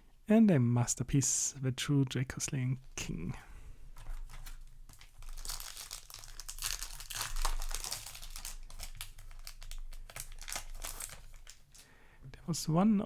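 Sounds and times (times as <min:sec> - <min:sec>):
foil wrapper crinkling: 0:04.0 - 0:11.9.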